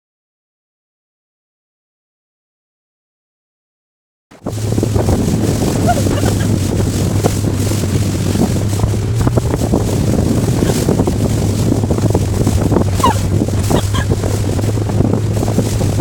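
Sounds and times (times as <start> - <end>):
boat motor running: 4.3 - 16.0
wind buffeting microphone: 4.3 - 16.0.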